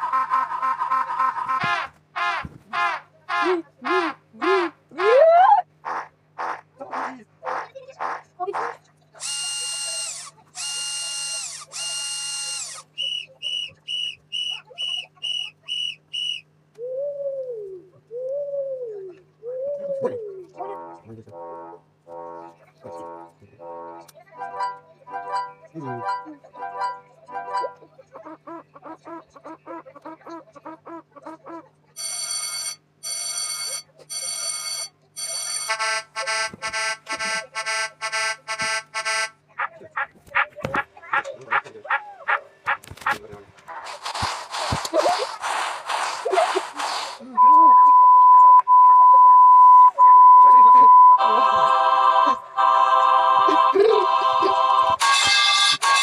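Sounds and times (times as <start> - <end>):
electronic alarm beeping: 32.0 - 39.3, 47.4 - 51.4
short high beeps: 47.4 - 51.2.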